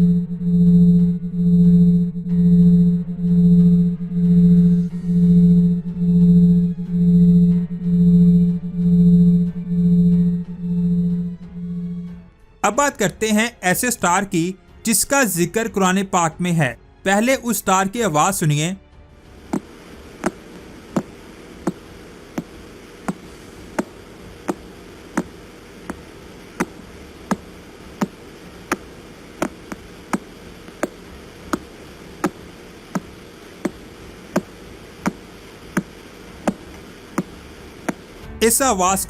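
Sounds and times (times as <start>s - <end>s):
static hiss: 19.2s - 39.0s
sharp evenly spaced clicks: 19.5s - 38.2s.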